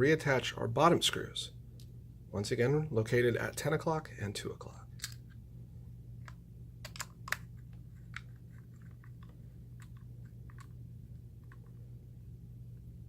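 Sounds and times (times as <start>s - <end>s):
low hum: 4.6s - 13.0s.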